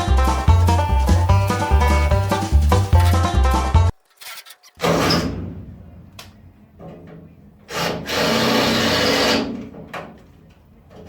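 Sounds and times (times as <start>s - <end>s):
clicks: 2.9s - 3.3s.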